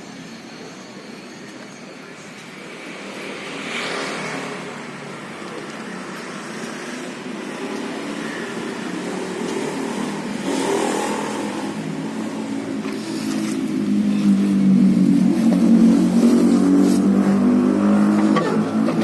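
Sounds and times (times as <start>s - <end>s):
traffic passing: 0.0s - 19.0s
vehicle engine running: 5.2s - 19.0s.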